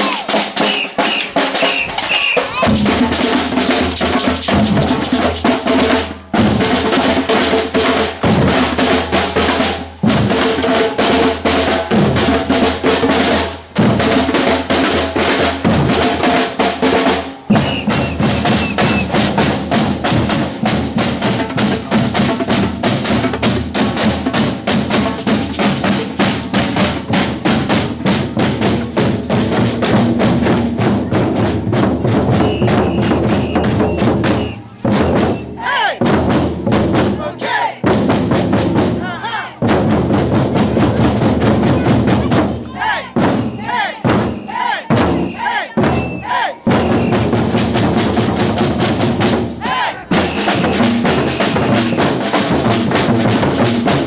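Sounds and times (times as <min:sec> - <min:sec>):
bass drums: 0:00.0 - 0:37.2, 0:37.8 - 0:54.0
samba drum ensemble: 0:00.0 - 0:54.0.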